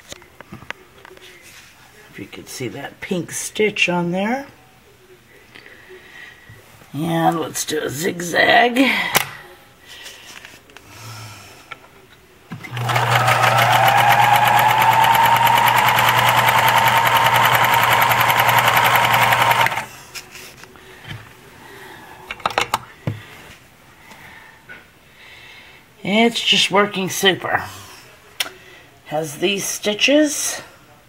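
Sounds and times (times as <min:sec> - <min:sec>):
sewing machine running: 0:12.6 - 0:19.9.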